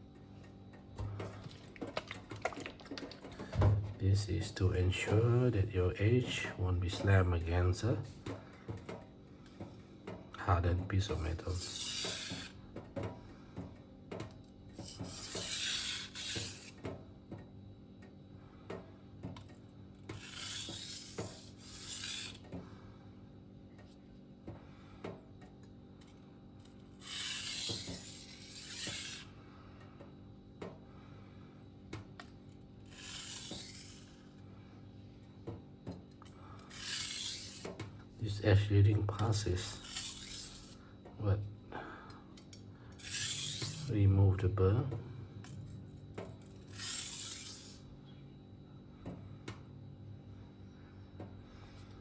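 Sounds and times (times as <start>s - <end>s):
knife scraping on whetstone: 11.2s - 12.6s, 14.8s - 16.7s, 20.1s - 22.4s, 27.0s - 29.3s, 32.8s - 34.2s, 36.7s - 37.8s, 39.6s - 40.8s, 43.0s - 43.9s, 46.5s - 47.8s.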